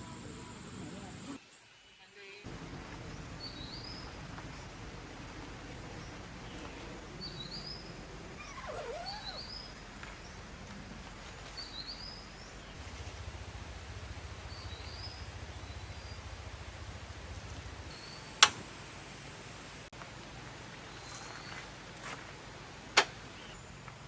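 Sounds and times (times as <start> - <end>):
bird chirping: 2.5 - 13.2, 13.8 - 18.4, 23.3 - 23.8
low pulsing hum: 2.5 - 17.9
sharp click: 18.4 - 18.7.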